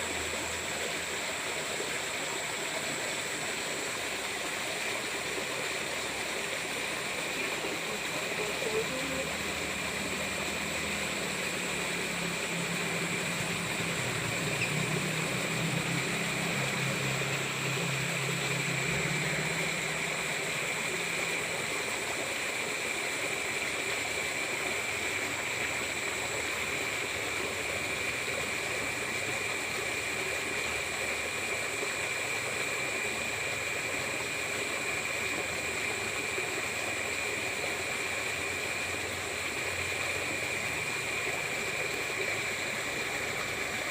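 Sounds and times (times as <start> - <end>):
water rushing in ditch: 0.0 - 43.9
steady high-pitched tone: 6.5 - 22.3.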